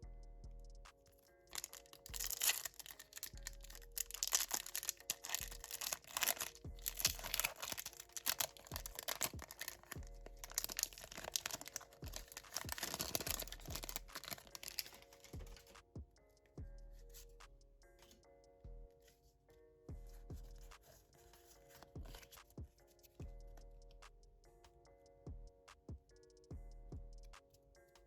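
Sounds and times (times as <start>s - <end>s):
quiet background music: 0.0s - 28.0s
foil wrappers crinkling and tearing: 1.5s - 15.7s.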